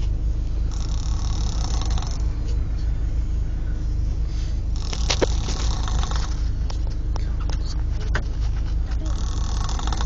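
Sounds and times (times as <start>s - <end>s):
steady low rumble: 0.0s - 10.0s
person snoring: 0.7s - 2.3s, 4.8s - 6.4s, 9.1s - 10.0s.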